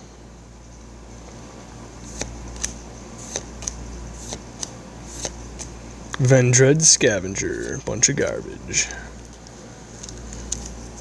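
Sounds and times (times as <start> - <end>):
low steady hum: 0.0 - 11.0
trading cards flipped by hand: 2.0 - 6.3, 10.0 - 10.9.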